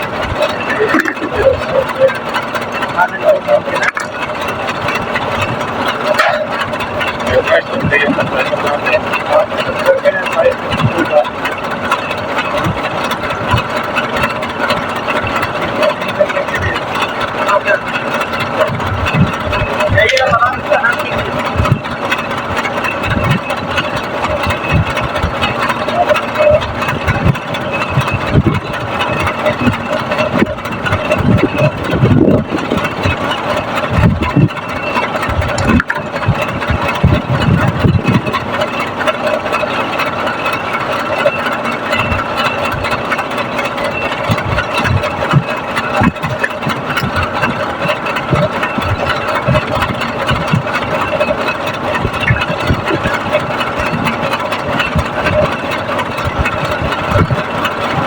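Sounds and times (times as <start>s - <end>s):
engine running steadily: 0.0s - 58.0s
low knocks and bumps: 41.5s - 58.0s.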